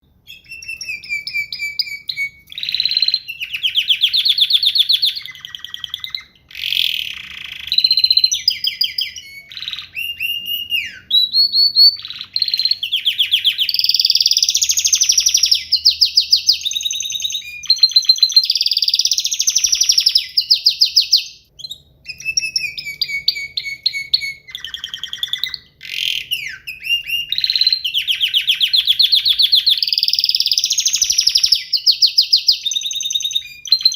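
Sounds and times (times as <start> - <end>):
canary singing trills: 0.1 - 33.9.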